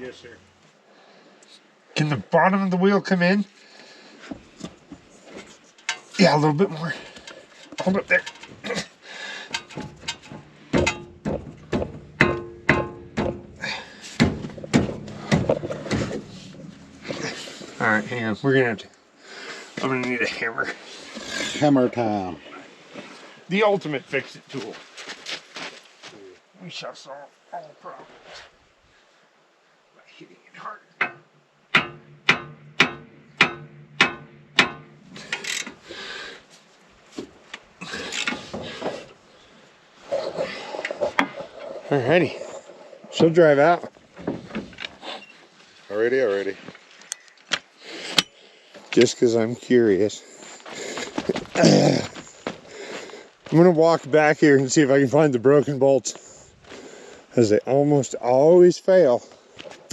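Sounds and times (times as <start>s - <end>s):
tools scraping and rattling on metal: 5.1s - 18.3s, 31.0s - 35.9s, 37.8s - 39.2s
metal-on-metal knocks: 9.5s - 17.8s, 31.0s - 35.8s
hammer striking metal: 9.6s - 13.6s, 14.2s - 17.3s, 31.0s - 35.1s.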